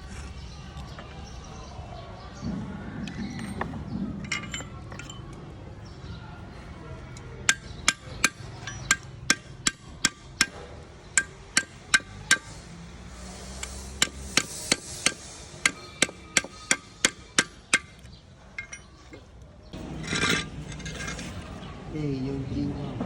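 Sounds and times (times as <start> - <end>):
hammer tapping on metal: 7.4 - 12.6, 13.4 - 19.2.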